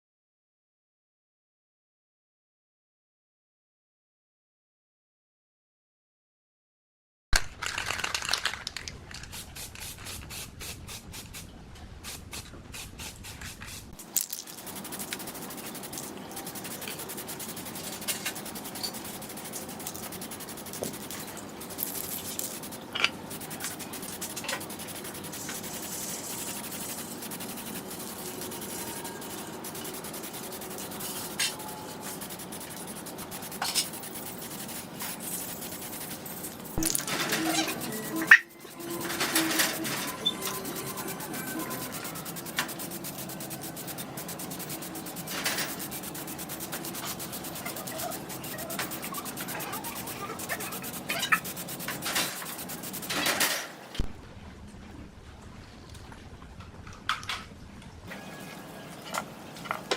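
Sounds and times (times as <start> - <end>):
scraping of metal parts: 13.4 - 53.8.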